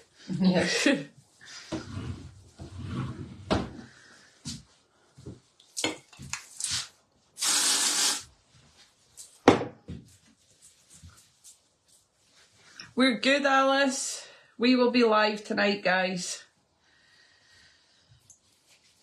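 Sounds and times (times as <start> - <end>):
spray can hiss: 6.6 - 8.3.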